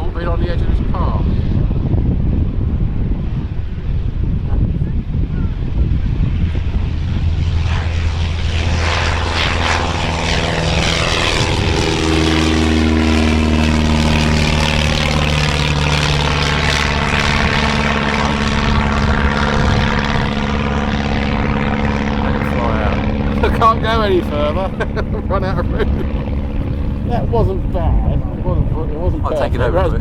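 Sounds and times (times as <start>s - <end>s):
propeller aircraft engine drone: 0.0s - 30.0s.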